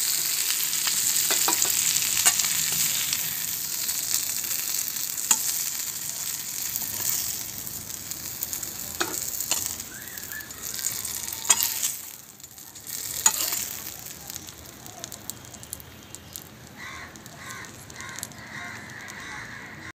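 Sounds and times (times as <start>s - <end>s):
prawns sizzling in oil: 0.0s - 19.9s
spatula clicking on pan: 9.0s - 9.8s, 12.8s - 13.8s.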